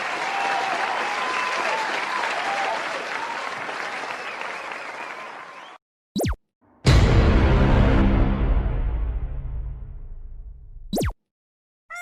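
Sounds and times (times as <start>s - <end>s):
crowd applauding and cheering: 0.0s - 5.8s.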